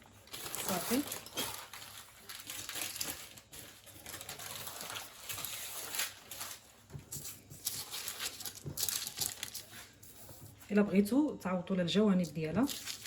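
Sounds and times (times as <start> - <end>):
baking paper rustling: 0.0 - 11.1, 12.2 - 13.0.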